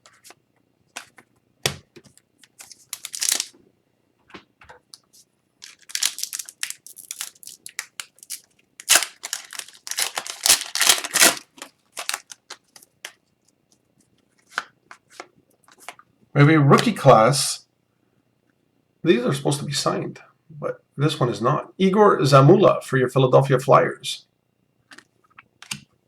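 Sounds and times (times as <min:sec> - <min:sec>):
cards clicking and rustling: 0:00.0 - 0:03.5, 0:05.6 - 0:13.2
wrapper crinkling and tearing: 0:02.4 - 0:03.5, 0:05.6 - 0:13.2.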